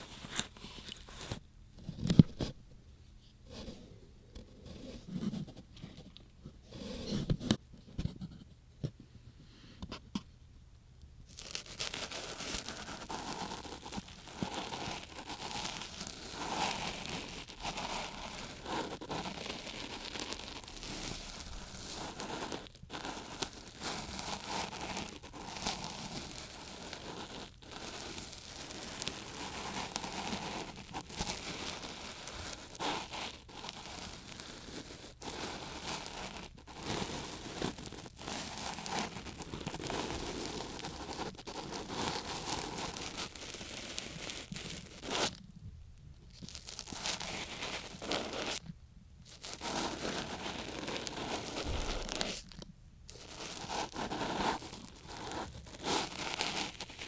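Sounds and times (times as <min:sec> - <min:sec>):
ear pick scraping microphone: 0:50.9 - 0:52.6.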